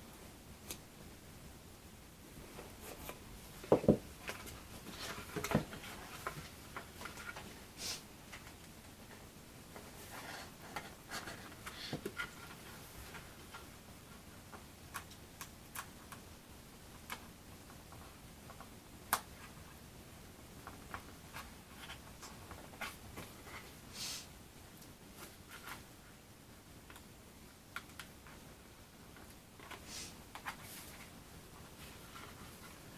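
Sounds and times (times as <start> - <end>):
rustling: 2.3 - 13.8.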